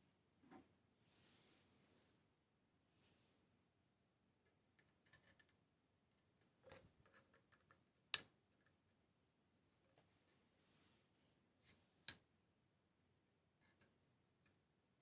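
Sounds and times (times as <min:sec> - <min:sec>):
small parts clicking and tapping: 0:04.4 - 0:05.6, 0:06.4 - 0:08.8.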